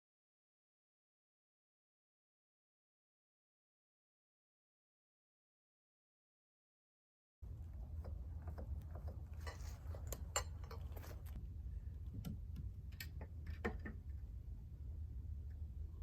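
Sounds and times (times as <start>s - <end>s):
steady low hum: 7.4s - 16.0s.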